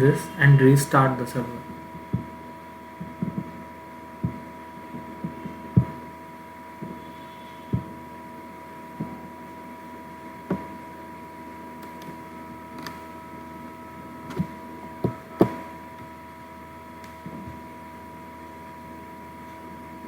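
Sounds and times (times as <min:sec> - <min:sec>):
electrical hum with high whine: 0:00.0 - 0:20.0.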